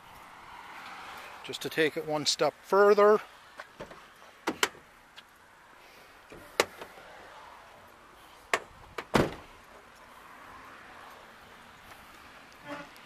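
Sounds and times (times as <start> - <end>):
car door latch clicks: 3.8 - 4.8
car door shutting: 8.6 - 9.5.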